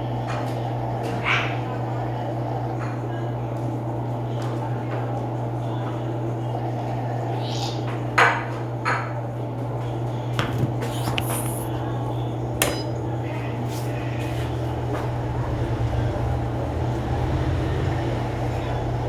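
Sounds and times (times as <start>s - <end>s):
washing machine humming: 0.0s - 19.0s
sharp metallic knocks: 12.6s - 13.0s.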